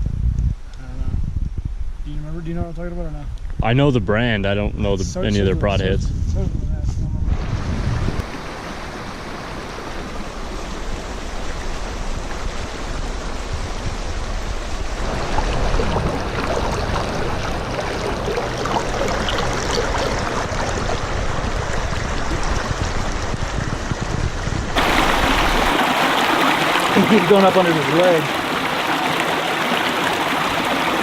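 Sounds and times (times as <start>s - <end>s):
creek water rushing: 7.4s - 23.5s, 24.8s - 31.0s.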